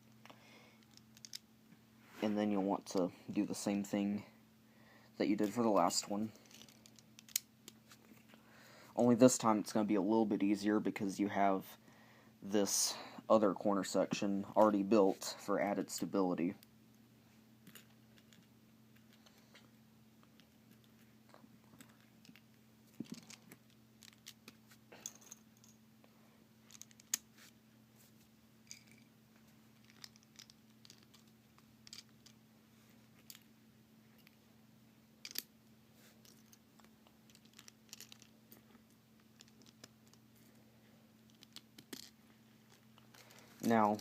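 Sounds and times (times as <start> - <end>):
faint steady hum: 0.0 - 44.0
plastic puzzle pieces clicking: 23.0 - 24.6, 29.8 - 32.4, 35.2 - 35.5, 36.2 - 38.3, 39.2 - 40.2, 41.3 - 42.1.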